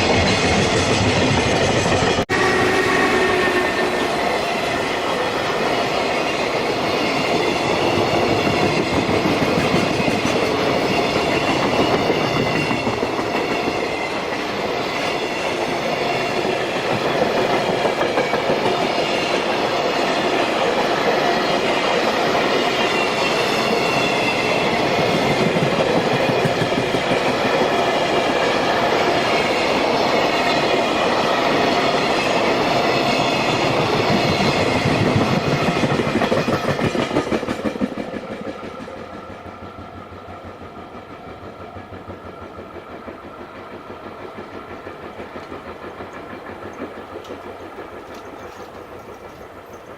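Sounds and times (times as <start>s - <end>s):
freight train rumbling past: 0.0s - 49.9s
wheels clattering over rail joints: 44.4s - 49.9s.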